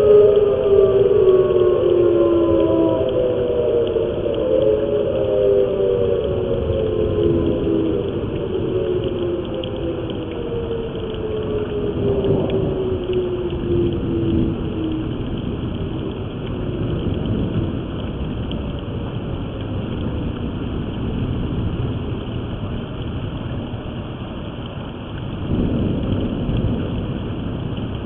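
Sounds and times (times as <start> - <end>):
rain hiss: 0.0 - 28.0.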